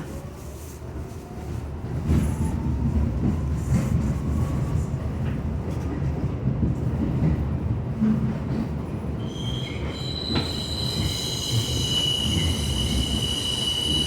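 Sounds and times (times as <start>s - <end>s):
train wheels rumbling on track: 1.3s - 14.0s.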